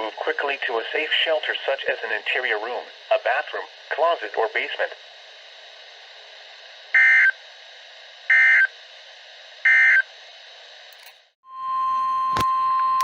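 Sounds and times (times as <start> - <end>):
radio static hiss: 0.0 - 10.0.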